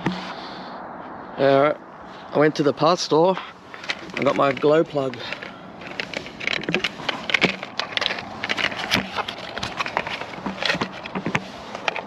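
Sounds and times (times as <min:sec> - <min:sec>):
packaging clicks and crackles: 0:03.7 - 0:12.0.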